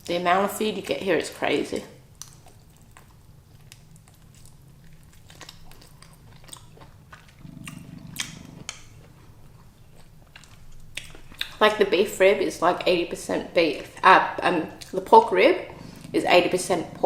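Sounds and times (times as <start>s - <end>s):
person chewing food: 2.1s - 11.6s, 15.7s - 17.0s
wet mouth clicks: 2.2s - 9.3s.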